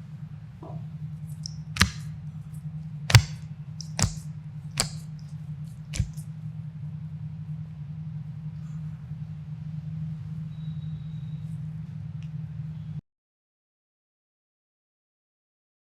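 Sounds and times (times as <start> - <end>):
spinal joints cracking: 1.4 - 2.1, 3.1 - 4.2, 4.8 - 5.3, 6.0 - 6.2.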